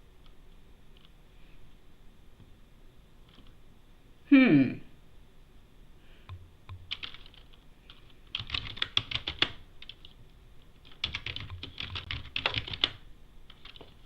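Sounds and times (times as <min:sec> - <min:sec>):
typing on a computer keyboard: 0:06.7 - 0:10.2, 0:10.8 - 0:14.0.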